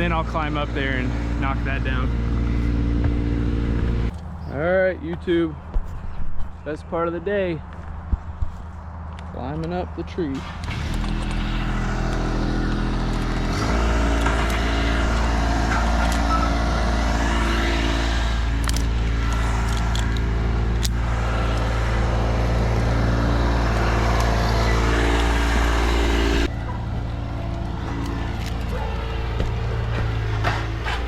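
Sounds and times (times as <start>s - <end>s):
engine running steadily: 0.0s - 5.8s, 9.4s - 31.0s.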